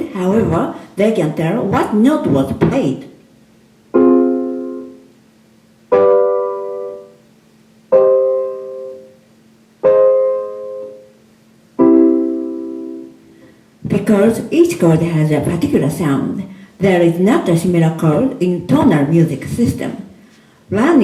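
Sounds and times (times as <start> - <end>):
piano chords: 0.0 - 0.8, 3.9 - 5.2, 5.9 - 14.8.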